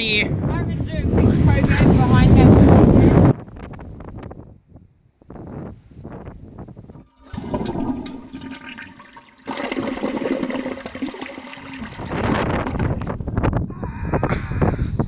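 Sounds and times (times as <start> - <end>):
rushing splashing water: 7.0 - 13.2.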